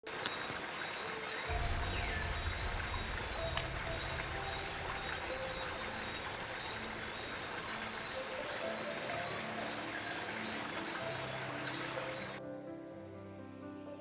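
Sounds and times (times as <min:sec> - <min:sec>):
steady low rumble: 0:01.5 - 0:08.6.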